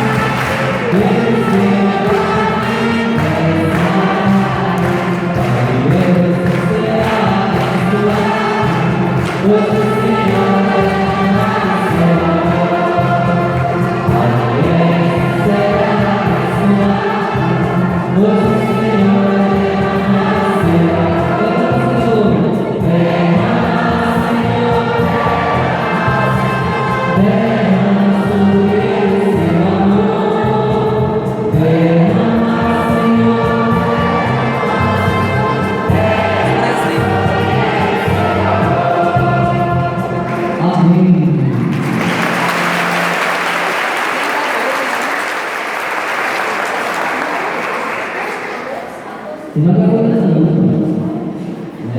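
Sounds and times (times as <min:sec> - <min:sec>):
choir singing: 0:00.0 - 0:44.9.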